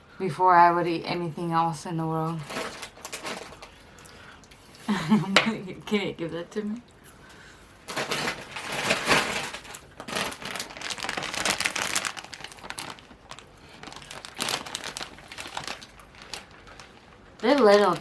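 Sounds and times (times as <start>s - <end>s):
paper packaging crinkling: 2.3s - 3.9s, 7.8s - 18.0s.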